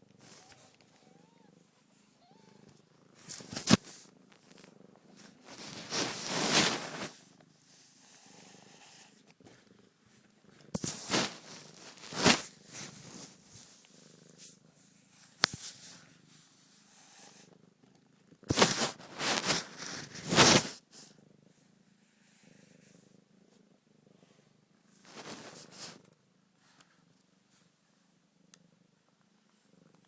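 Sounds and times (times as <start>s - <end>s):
cat purring: 0.0s - 30.0s
rubbing and bumping on phone: 18.5s - 20.7s.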